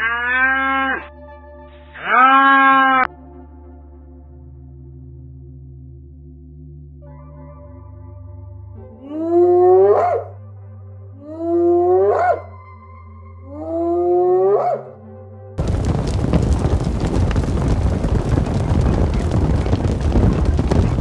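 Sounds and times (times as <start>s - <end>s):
animal call sweeping upward: 0.0s - 1.1s, 1.9s - 3.1s, 9.2s - 10.3s, 11.6s - 12.5s, 13.6s - 14.9s
loud rushing noise: 15.6s - 21.0s.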